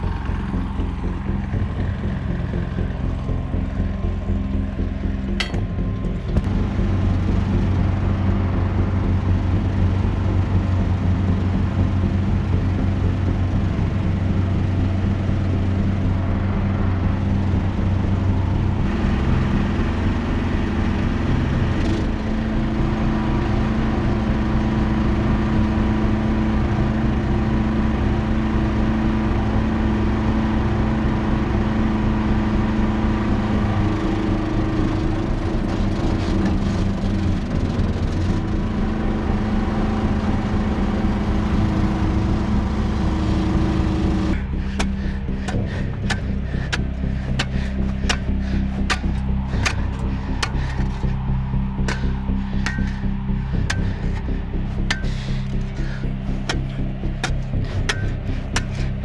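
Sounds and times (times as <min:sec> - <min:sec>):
excavator engine running: 0:00.0 - 0:59.0.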